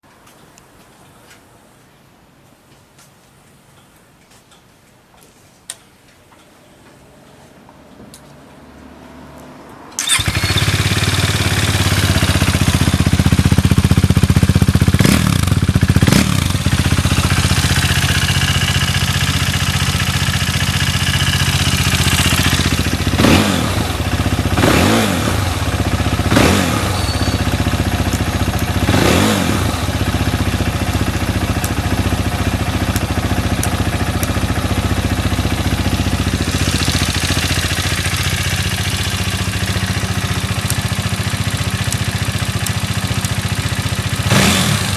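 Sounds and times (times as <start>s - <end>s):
motorcycle engine idling: 10.0s - 44.9s
motorcycle throttle blips: 10.0s - 44.9s.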